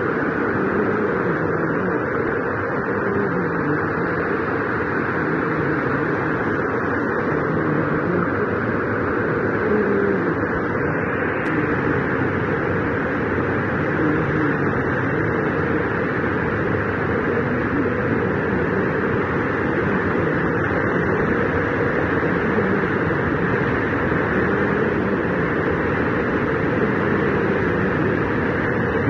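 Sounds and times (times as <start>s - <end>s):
heavy rain falling: 0.0s - 29.0s.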